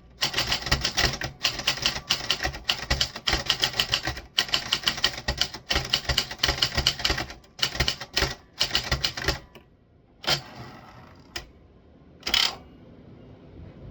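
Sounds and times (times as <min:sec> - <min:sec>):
typewriter keys clacking: 0:00.2 - 0:09.6, 0:10.2 - 0:10.6, 0:12.2 - 0:12.6.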